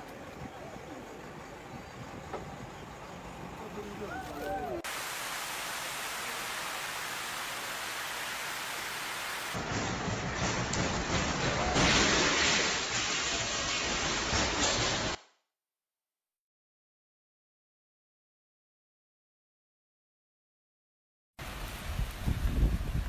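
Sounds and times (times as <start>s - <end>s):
heavy rain hiss: 0.0s - 15.2s, 21.4s - 23.0s.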